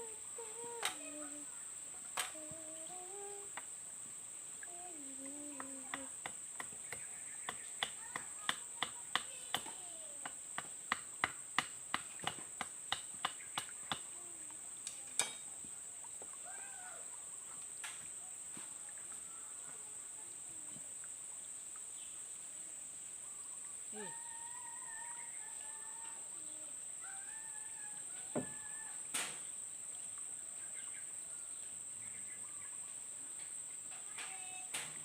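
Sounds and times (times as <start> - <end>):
tool striking wood: 5.9 - 14.0.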